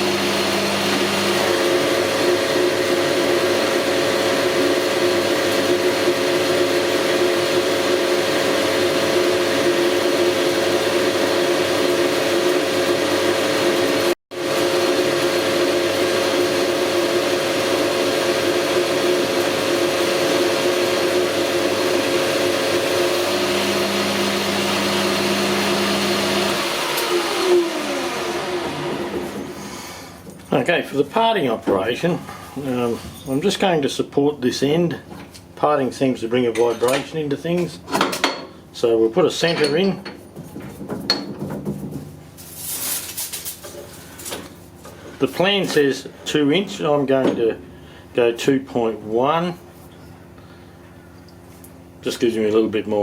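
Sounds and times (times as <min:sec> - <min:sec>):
lathe spindle winding down: 0:10.6 - 0:30.0.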